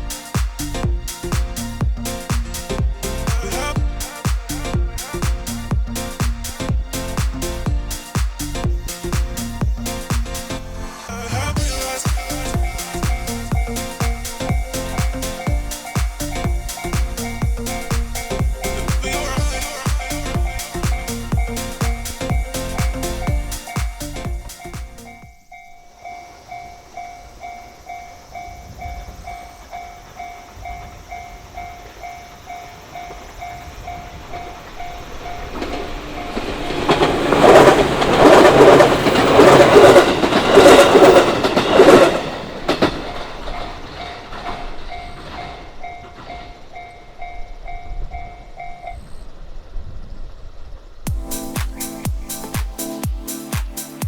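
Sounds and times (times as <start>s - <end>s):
train passing: 0.0s - 54.0s
wheels clacking over rail joints: 34.3s - 47.8s.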